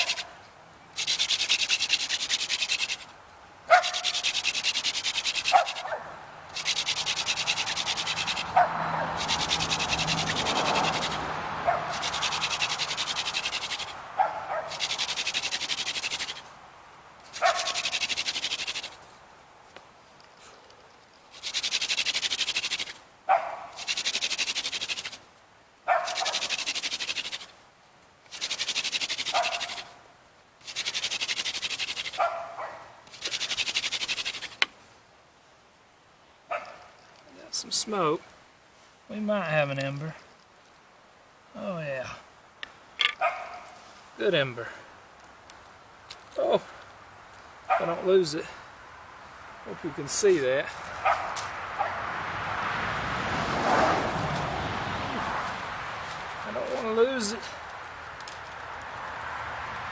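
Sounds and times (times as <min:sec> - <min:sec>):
wood rasping on wood: 0:00.0 - 0:00.3, 0:01.0 - 0:03.1, 0:03.7 - 0:16.5, 0:17.3 - 0:19.0, 0:21.3 - 0:23.0, 0:23.8 - 0:25.2, 0:26.0 - 0:27.6, 0:28.3 - 0:30.0, 0:30.6 - 0:32.4, 0:33.1 - 0:34.7.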